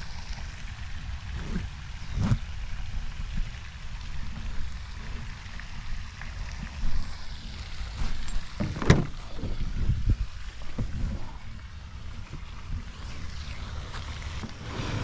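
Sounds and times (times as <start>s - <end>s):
wind buffeting microphone: 4.2s - 15.0s.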